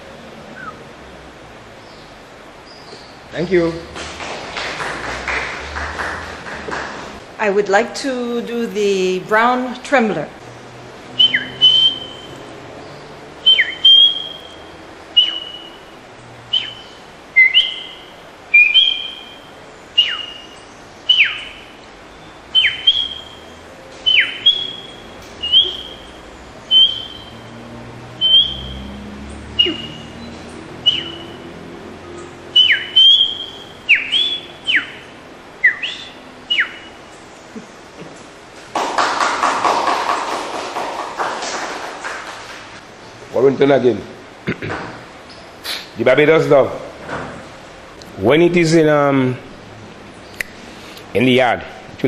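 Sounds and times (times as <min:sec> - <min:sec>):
person whistling bird call: 0:13.5 - 0:14.6, 0:26.7 - 0:27.3, 0:28.2 - 0:28.8, 0:29.6 - 0:30.1, 0:30.8 - 0:31.3.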